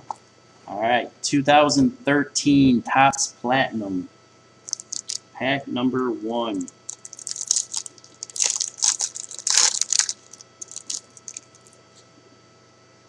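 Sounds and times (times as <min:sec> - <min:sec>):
foil wrapper crinkling: 0:04.6 - 0:05.2, 0:06.6 - 0:11.8.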